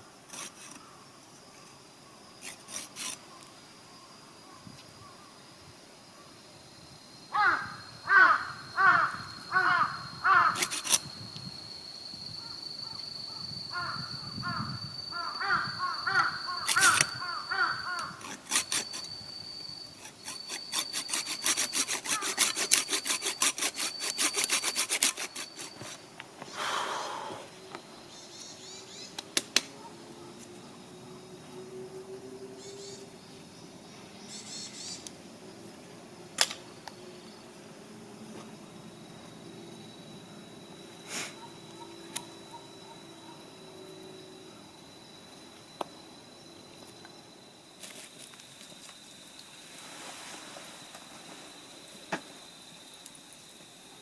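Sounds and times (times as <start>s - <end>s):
crows cawing: 7.3s - 10.8s, 13.8s - 18.2s.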